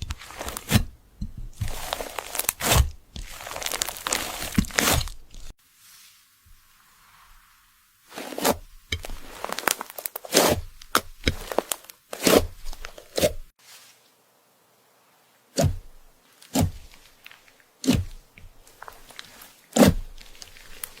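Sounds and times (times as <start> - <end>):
knife slicing crisp food: 0.0 - 5.5, 8.1 - 13.5, 15.5 - 21.0.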